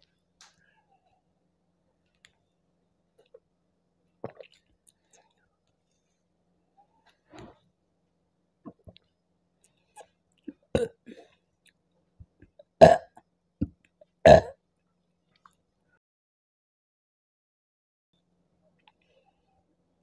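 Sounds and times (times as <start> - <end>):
woman burping: 10.6 - 11.2, 12.8 - 13.2, 14.2 - 14.6.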